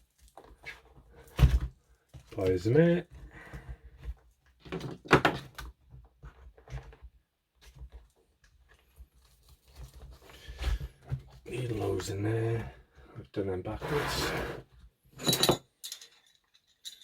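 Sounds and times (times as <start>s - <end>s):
tools rustling into fabric tool bag: 15.2s - 17.0s.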